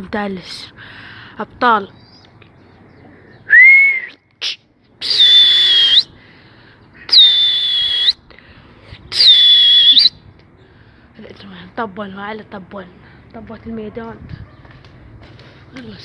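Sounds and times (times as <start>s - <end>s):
person whistling loudly: 3.5s - 6.1s, 7.1s - 8.2s, 9.1s - 10.1s.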